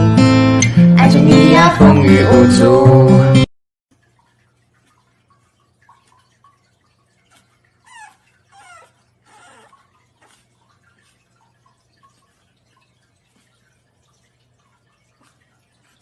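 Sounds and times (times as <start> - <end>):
puppy whimpering: 7.3 - 10.5.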